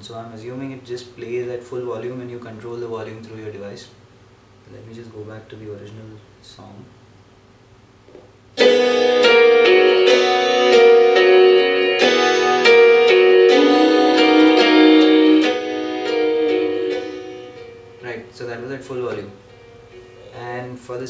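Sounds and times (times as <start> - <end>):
music from portable speaker: 8.6 - 18.0, 19.4 - 20.4.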